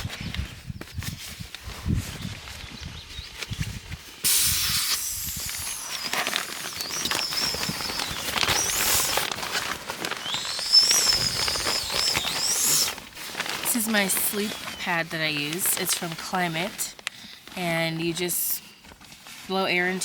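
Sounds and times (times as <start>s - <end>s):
steady hiss: 4.2s - 9.3s, 10.2s - 13.0s
high wavering whistle: 4.7s - 9.3s, 10.2s - 13.0s.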